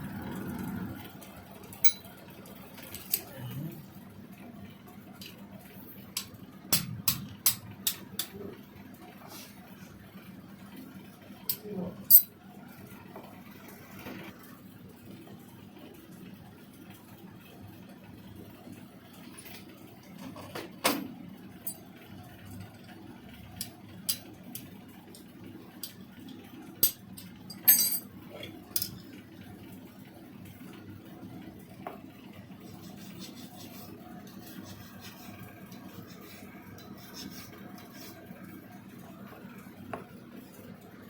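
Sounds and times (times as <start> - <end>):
low hum: 0.0 - 2.1
hand tools clinking on stone: 1.8 - 2.0, 26.8 - 28.1.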